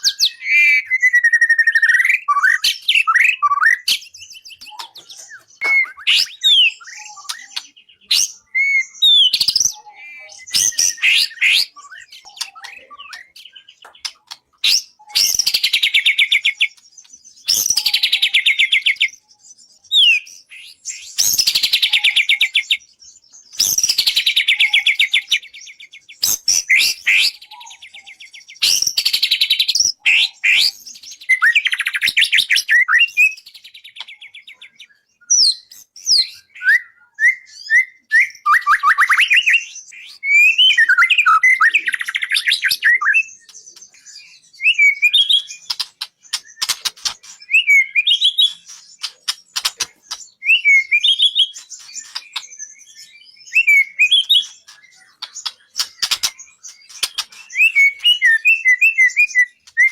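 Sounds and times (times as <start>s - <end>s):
short sharp bird chirps: 38.2s - 59.9s
songbird rattling trill: 45.0s - 58.7s.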